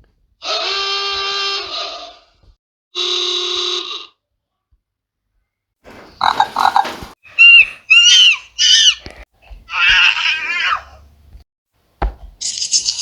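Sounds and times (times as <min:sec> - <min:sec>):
pig-like squeals: 0:05.9 - 0:09.1, 0:09.7 - 0:11.0
raspy animal noise: 0:05.9 - 0:11.1.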